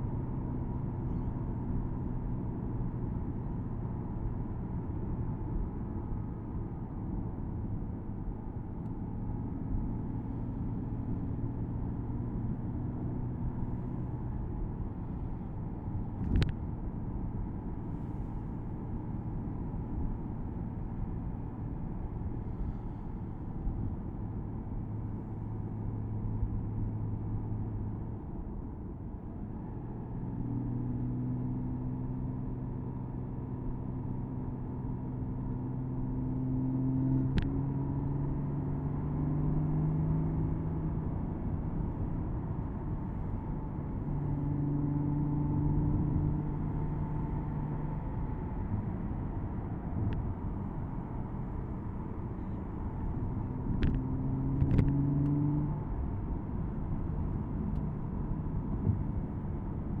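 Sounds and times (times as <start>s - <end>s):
road and tyre noise: 0.0s - 60.0s
car engine accelerating: 30.2s - 60.0s.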